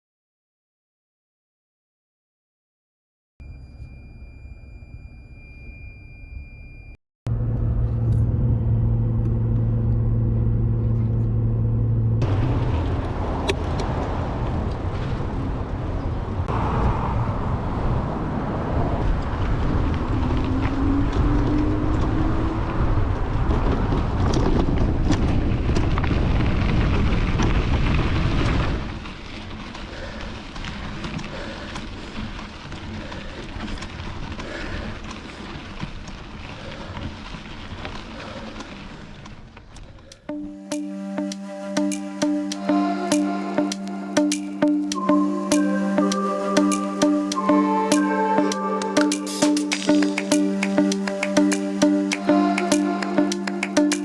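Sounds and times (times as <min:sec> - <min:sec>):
wind rushing over microphone: 0:12.8 - 0:29.1
bike tyres on dirt trail: 0:19.0 - 0:40.3.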